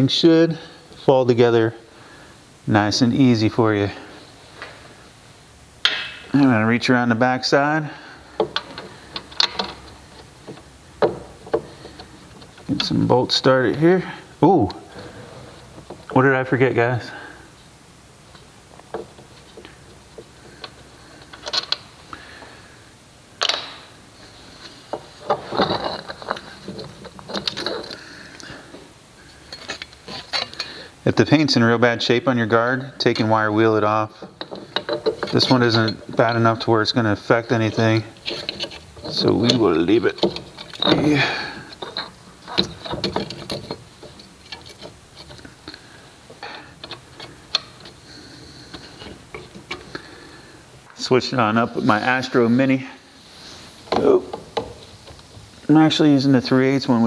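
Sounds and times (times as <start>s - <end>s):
metal tools clinking and clanking: 8.4s - 13.9s, 18.9s - 21.9s, 24.9s - 28.0s, 33.0s - 45.7s.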